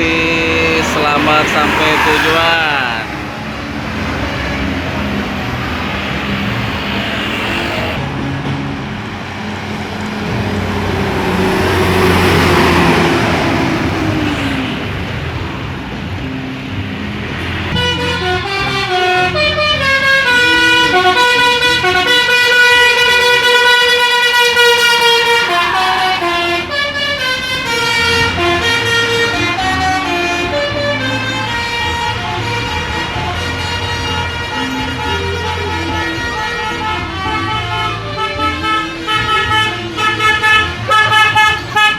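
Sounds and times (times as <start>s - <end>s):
multi-tone bus air horn melody: 0.0s - 8.1s, 17.3s - 41.9s
bus passing: 0.0s - 41.9s.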